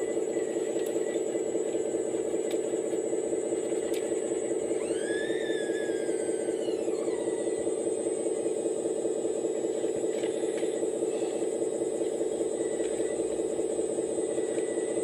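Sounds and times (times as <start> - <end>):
hydraulic pump motor humming: 0.0 - 15.0
rising and falling squeal: 4.7 - 7.7.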